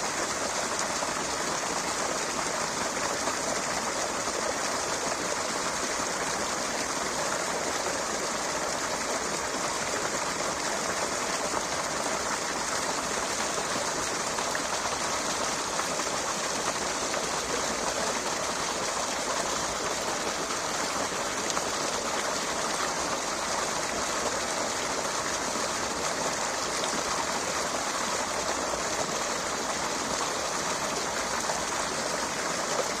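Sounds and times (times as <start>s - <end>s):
running water rushing: 0.0s - 33.0s.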